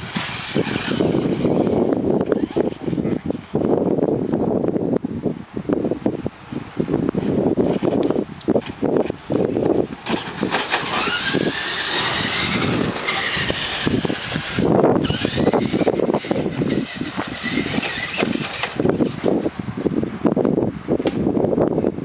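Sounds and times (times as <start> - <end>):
electric motor whining: 0.0 - 3.5, 9.4 - 19.6
rough crackling noise: 7.6 - 20.0.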